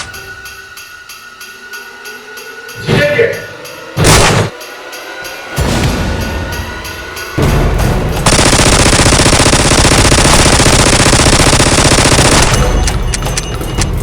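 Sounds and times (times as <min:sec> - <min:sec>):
background music: 0:00.0 - 0:14.0
automatic gunfire: 0:08.2 - 0:12.8.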